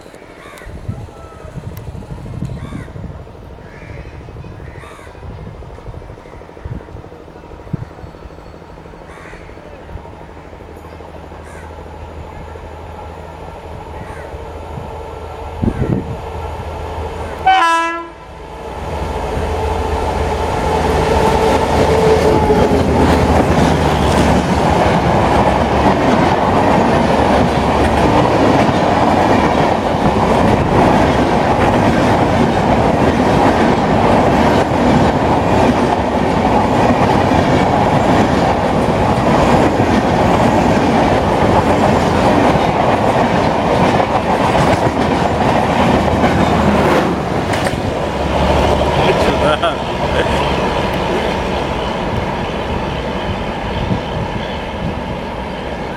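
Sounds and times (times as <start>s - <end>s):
train rushing past: 0.7s - 55.9s
locomotive horn blast: 17.3s - 18.3s.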